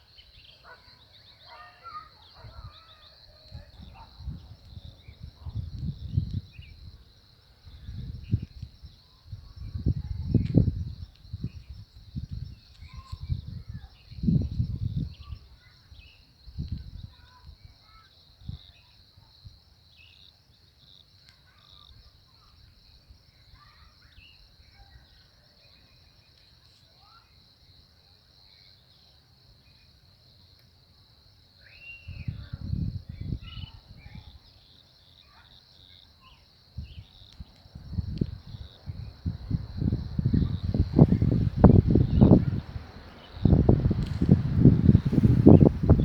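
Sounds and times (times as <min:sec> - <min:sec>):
insects chorus: 0:00.0 - 0:46.0.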